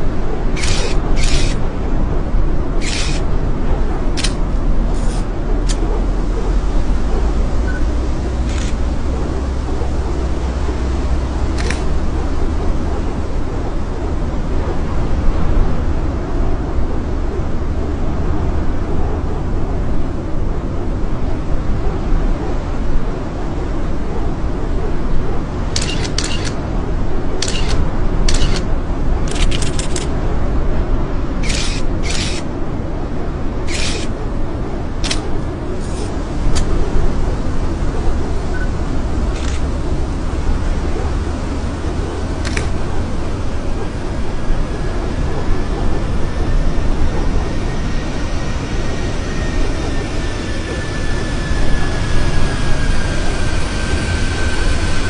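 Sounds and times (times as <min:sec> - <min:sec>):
faint high whine: 0:00.0 - 0:15.9, 0:33.3 - 0:55.0
wind buffeting microphone: 0:00.0 - 0:55.0
sharp high-pitched crackling bursts: 0:00.6 - 0:01.6, 0:02.8 - 0:03.3.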